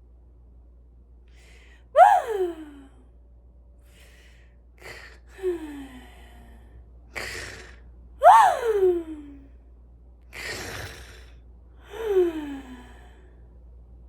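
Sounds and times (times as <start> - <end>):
person mock snoring: 7.2 - 7.8, 10.4 - 11.4.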